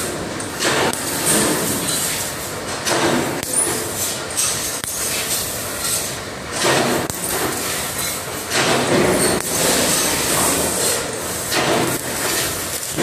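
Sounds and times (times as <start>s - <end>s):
laser cutter hissing: 6.9s - 13.0s.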